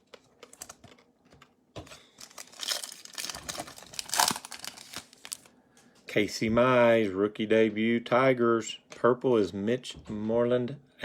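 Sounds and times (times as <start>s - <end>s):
card pack wrapper tearing and crinkling: 2.2s - 5.5s.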